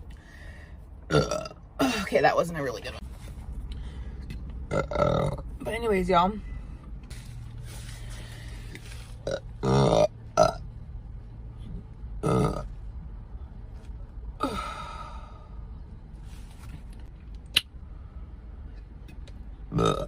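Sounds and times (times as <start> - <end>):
woman burping: 1.1 - 2.1, 4.7 - 5.4.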